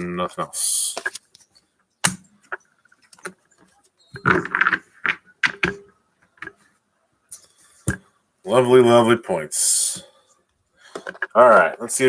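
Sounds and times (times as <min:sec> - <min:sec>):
trading cards clacking: 0:00.9 - 0:06.6.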